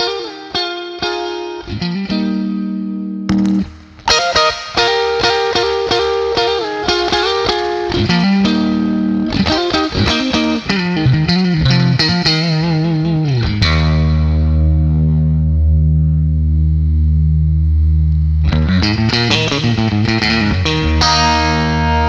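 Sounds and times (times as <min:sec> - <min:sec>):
electric guitar playing: 0:00.0 - 0:22.0.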